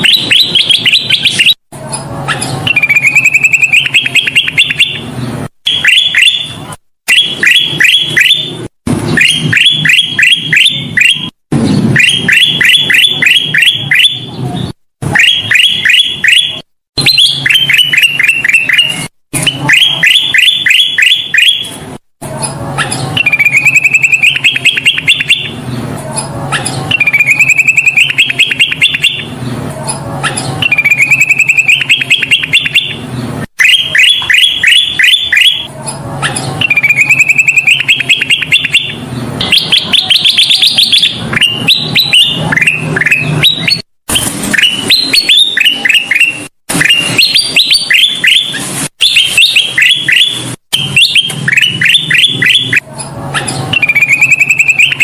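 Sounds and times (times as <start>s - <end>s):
bulbul singing: 0.0s - 55.0s.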